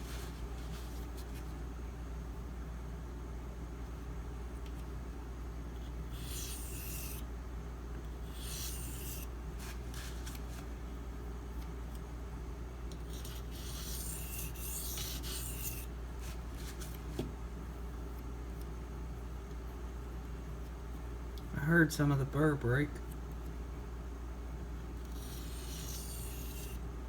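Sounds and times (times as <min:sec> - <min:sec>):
steady low hum: 0:00.0 - 0:27.0
knife scraping on whetstone: 0:06.1 - 0:07.2, 0:08.3 - 0:09.3, 0:13.2 - 0:15.9, 0:25.1 - 0:26.8.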